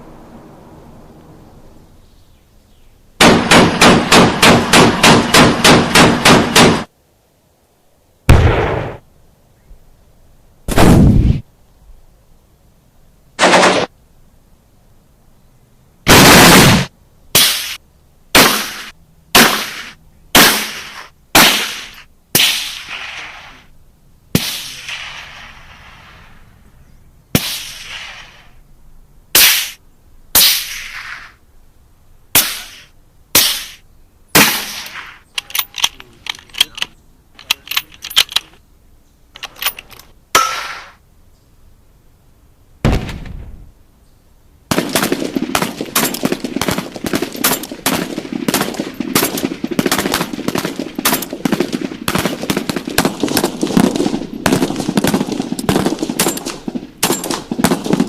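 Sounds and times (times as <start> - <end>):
gunshots: 3.2 - 6.9, 8.3 - 9.0, 10.7 - 11.4, 13.4 - 13.9, 16.1 - 17.8, 18.4 - 23.6, 24.4 - 26.3, 27.4 - 28.5, 34.4 - 35.2, 42.8 - 43.5, 44.7 - 58.0
deep boom: 8.3 - 9.0, 42.8 - 43.7
rapid automatic gunfire: 13.4 - 13.9, 44.7 - 58.0.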